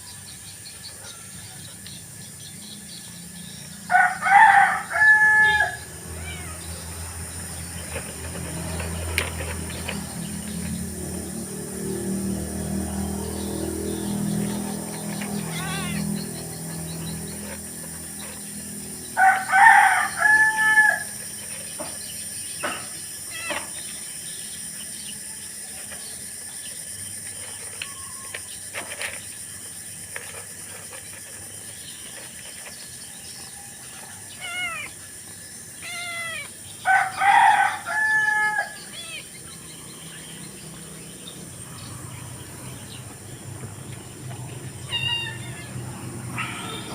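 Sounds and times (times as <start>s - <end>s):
rooster crowing: 3.9s - 6.9s, 15.2s - 16.3s, 19.0s - 21.3s, 33.4s - 34.9s, 35.8s - 39.2s.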